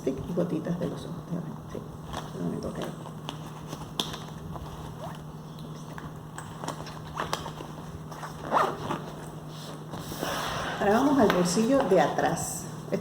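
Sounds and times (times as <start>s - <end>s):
bag clicks and rustles: 2.0s - 10.1s
zipper rasping: 3.6s - 10.2s.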